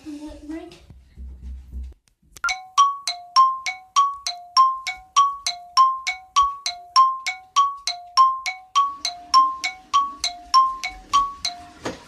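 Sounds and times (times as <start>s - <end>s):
chiming bell-like tune: 2.5s - 11.9s.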